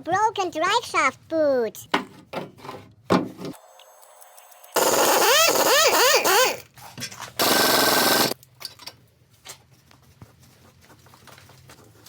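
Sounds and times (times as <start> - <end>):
impact wrench hammering: 4.8 - 6.6, 7.4 - 8.4.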